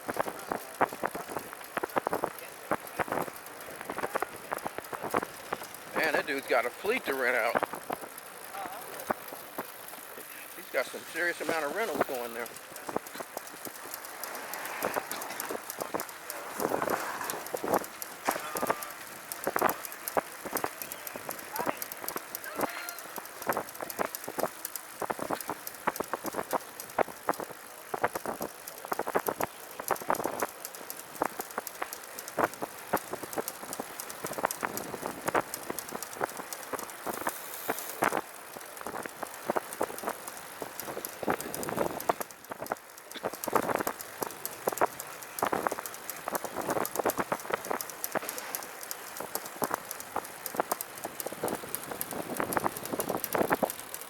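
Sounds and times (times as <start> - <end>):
rapid irregular clicking: 0.0 - 54.0
wind and tyre hiss: 0.0 - 54.0.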